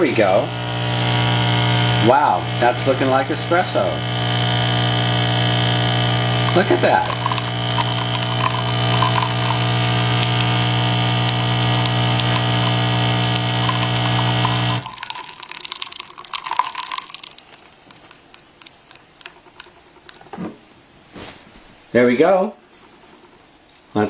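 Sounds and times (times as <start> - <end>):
coffee machine pump buzzing: 0.0 - 17.9
coffee dripping: 0.1 - 20.3
faint clicks: 16.9 - 20.3.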